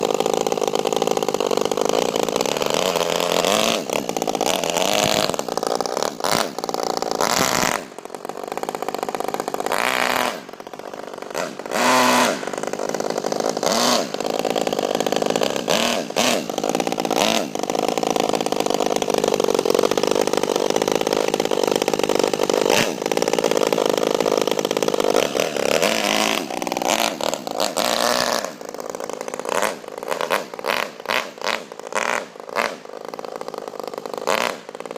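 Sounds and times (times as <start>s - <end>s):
model car engine revving: 0.0s - 34.9s.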